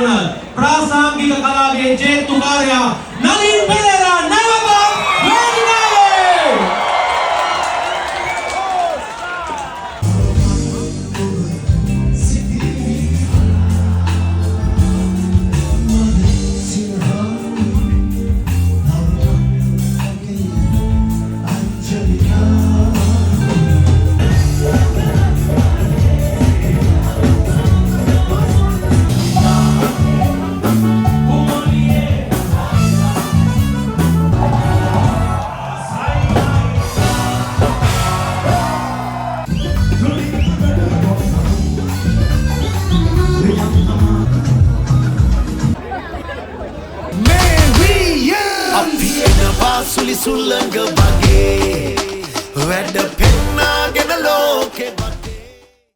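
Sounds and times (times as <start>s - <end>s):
bass line: 10.0s - 45.8s, 47.2s - 50.3s, 51.0s - 52.0s, 53.2s - 54.4s
band music: 10.0s - 46.0s, 47.1s - 55.8s
person singing: 10.3s - 39.6s, 47.2s - 55.9s.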